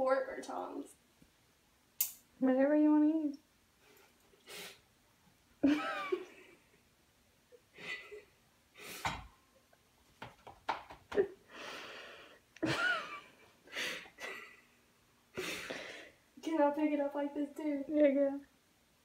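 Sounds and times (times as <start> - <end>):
person gasping or laughing: 13.7 - 14.7, 15.3 - 16.2.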